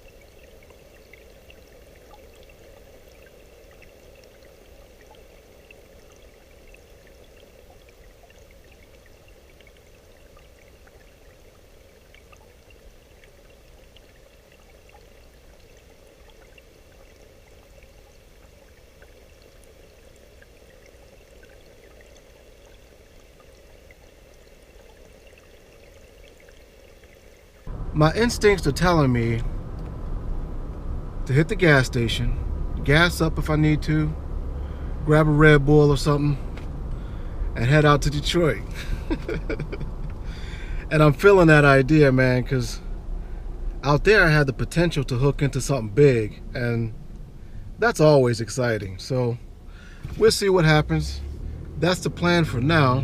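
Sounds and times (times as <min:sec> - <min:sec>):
steady rain falling: 0:27.4 - 0:53.0.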